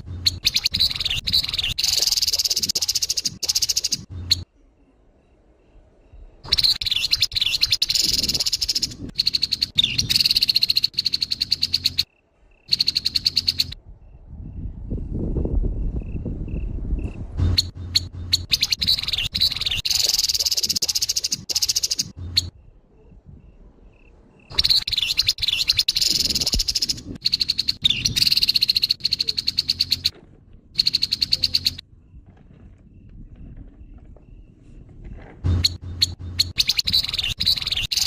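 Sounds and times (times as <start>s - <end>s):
bird giving harsh rattling call: 0.0s - 4.4s, 6.5s - 12.1s, 12.7s - 13.8s, 17.4s - 22.5s, 24.5s - 30.1s, 30.8s - 31.8s, 35.6s - 38.0s.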